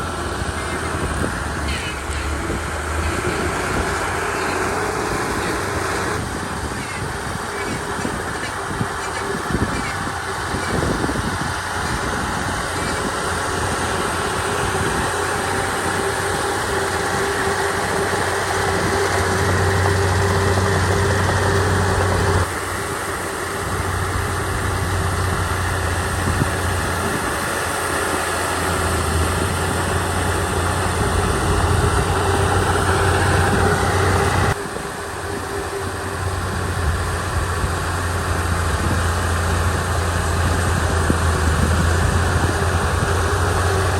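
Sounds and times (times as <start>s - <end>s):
bulldozer diesel engine running: 0.0s - 43.9s.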